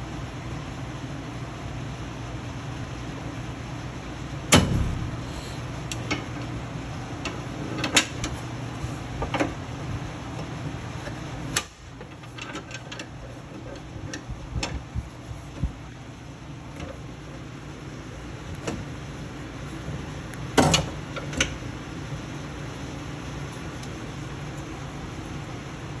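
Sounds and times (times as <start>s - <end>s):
steady low hum: 4.6s - 5.8s.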